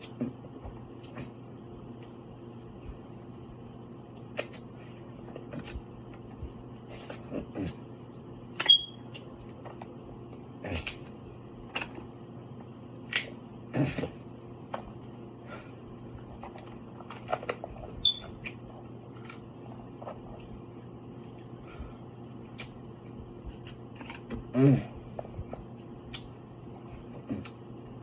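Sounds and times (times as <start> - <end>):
faint steady hum: 0.0 - 28.0
seafood eating cracks and smacks: 16.3 - 20.6.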